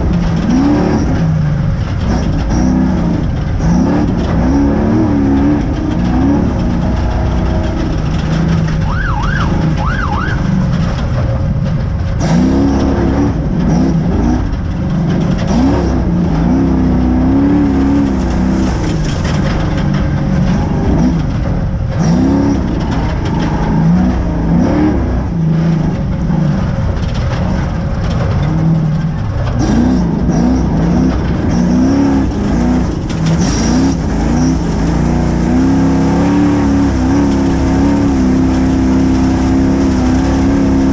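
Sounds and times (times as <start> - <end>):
chassis knocks and clatter: 0.0 - 40.9
race engine revving: 0.0 - 40.9
road and wind noise: 0.0 - 40.9
warbling siren-like tone: 8.8 - 10.5.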